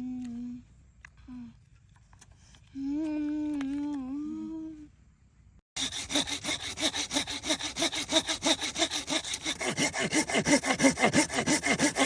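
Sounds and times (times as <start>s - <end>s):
hand saw cutting wood: 5.8s - 12.0s.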